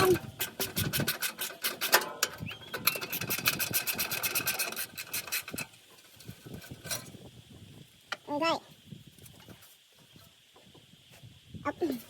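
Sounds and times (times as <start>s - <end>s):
tool rapid ticking: 0.0s - 5.7s.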